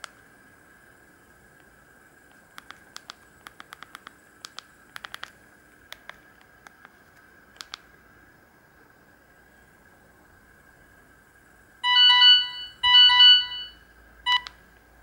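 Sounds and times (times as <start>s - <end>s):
faint high whine: 0.0s - 15.0s
phone keypad buttons clicking: 2.6s - 5.3s.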